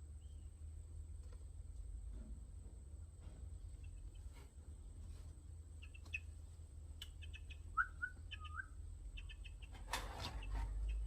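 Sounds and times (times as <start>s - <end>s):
birds chirping: 0.0s - 1.6s, 3.5s - 11.0s
rustling: 3.2s - 6.7s
lower bird calls: 7.0s - 11.0s.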